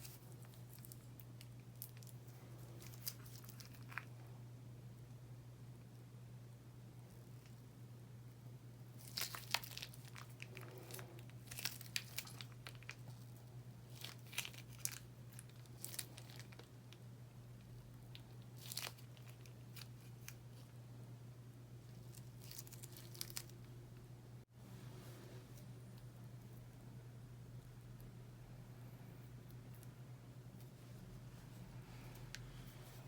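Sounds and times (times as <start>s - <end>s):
slime crackling and popping: 9.0s - 13.2s, 18.1s - 20.4s.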